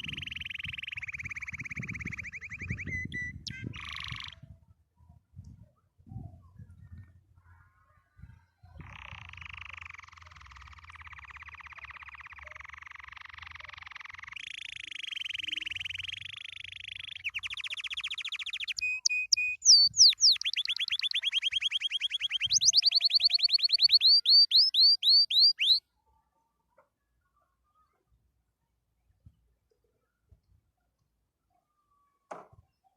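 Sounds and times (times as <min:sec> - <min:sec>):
canary singing trills: 0:00.0 - 0:04.6, 0:06.2 - 0:25.9.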